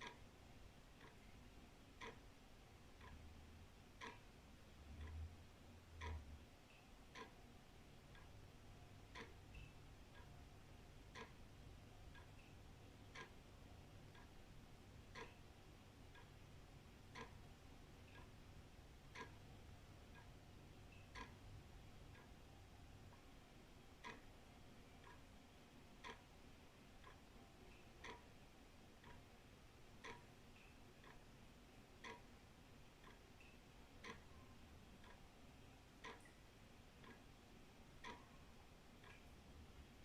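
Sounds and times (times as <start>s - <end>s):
wall clock ticking: 0.0s - 40.0s.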